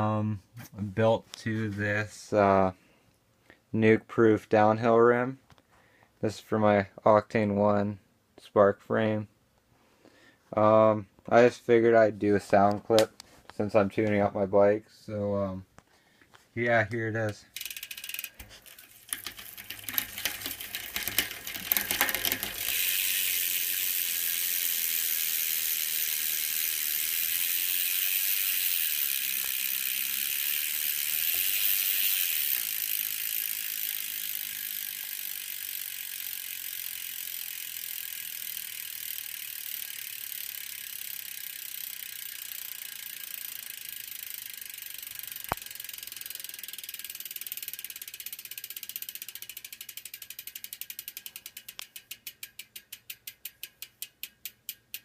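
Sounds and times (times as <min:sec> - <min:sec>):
bicycle hub freewheel clicking: 0:17.5 - 0:55.0.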